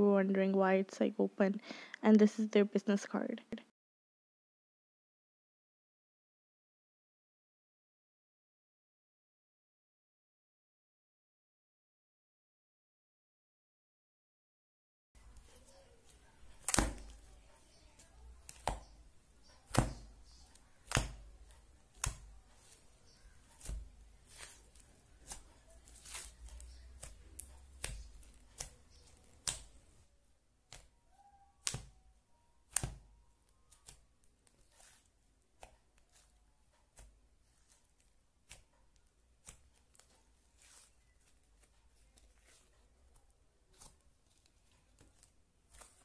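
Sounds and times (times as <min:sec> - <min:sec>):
slime clicking and popping: 0:31.6 - 0:31.9.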